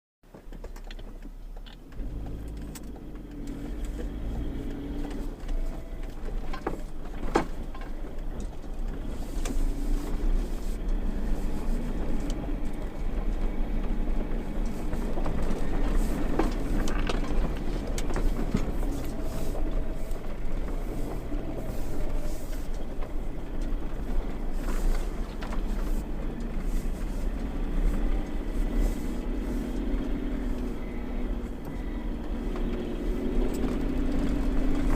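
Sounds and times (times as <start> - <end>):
car engine rumbling while driving: 0.2 - 34.9.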